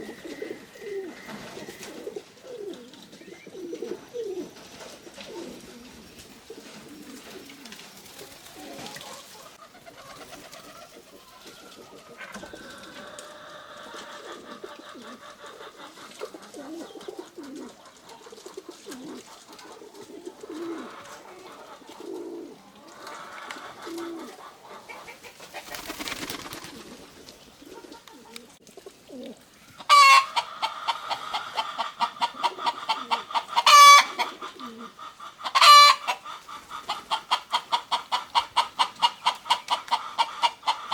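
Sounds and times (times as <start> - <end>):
pigeons cooing: 0.0 - 40.9
loud drawn-out fowl call: 29.9 - 30.7, 33.6 - 34.3, 35.5 - 36.2.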